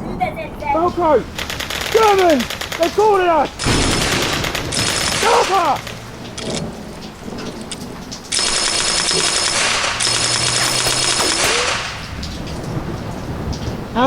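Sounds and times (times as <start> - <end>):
machine-gun fire: 1.4 - 6.6, 8.3 - 12.2.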